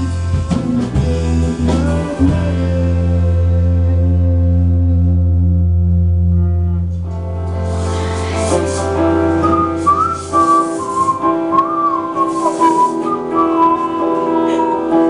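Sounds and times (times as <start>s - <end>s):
acoustic guitar chords: 0.0s - 15.0s
high sliding whistled melody: 7.7s - 15.0s.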